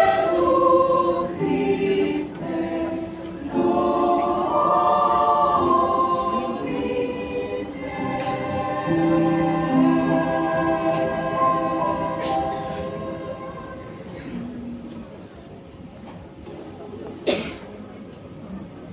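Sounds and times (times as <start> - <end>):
children's choir singing: 0.0 - 14.9.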